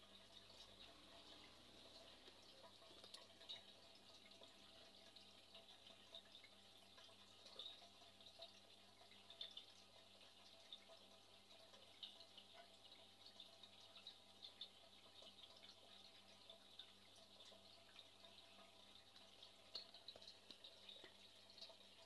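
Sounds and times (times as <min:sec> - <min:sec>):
faint background hiss: 0:00.0 - 0:22.0
light ticks: 0:00.5 - 0:08.5, 0:19.2 - 0:21.8.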